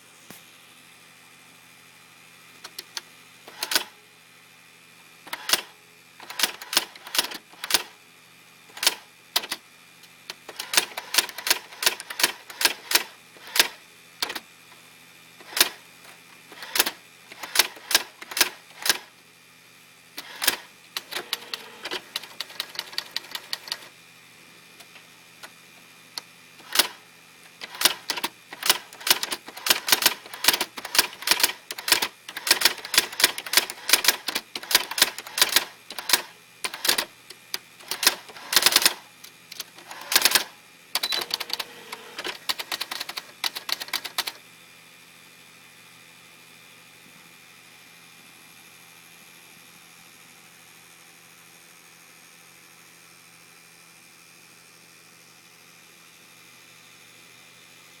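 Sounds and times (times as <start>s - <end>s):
faint motor hum: 0.0s - 58.0s
mechanical whirr: 2.6s - 4.0s, 5.2s - 8.0s, 8.7s - 9.6s, 10.3s - 14.4s, 15.4s - 19.1s, 20.2s - 23.9s, 26.2s - 44.4s
typewriter key strikes: 5.3s - 7.9s, 8.8s - 9.6s, 10.5s - 14.4s, 27.6s - 37.1s, 37.8s - 44.4s.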